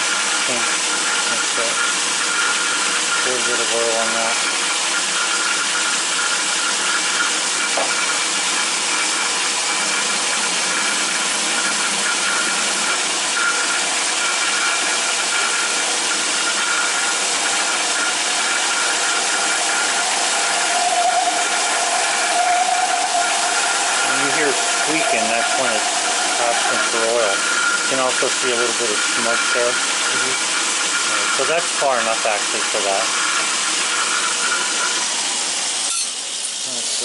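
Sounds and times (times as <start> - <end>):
metal lathe whirring: 0.0 - 37.0
drill squeaking: 21.3 - 36.6.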